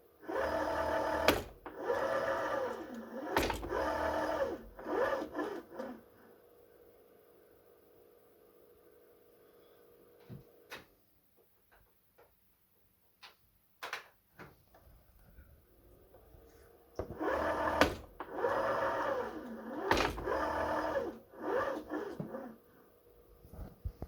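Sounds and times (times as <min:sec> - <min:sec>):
small motor whining: 0:00.2 - 0:06.0, 0:17.0 - 0:22.6.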